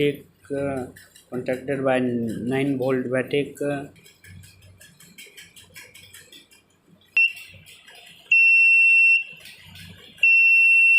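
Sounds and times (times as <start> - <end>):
buzzer high-pitched tone: 7.2 - 7.6, 8.3 - 9.4, 10.2 - 10.9.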